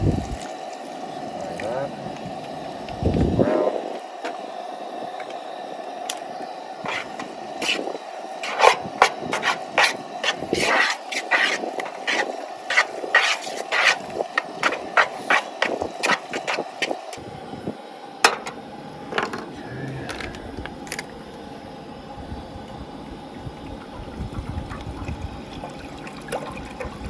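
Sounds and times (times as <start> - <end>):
steady hum: 0.0 - 27.0
utensil scraping a pan: 6.8 - 16.7.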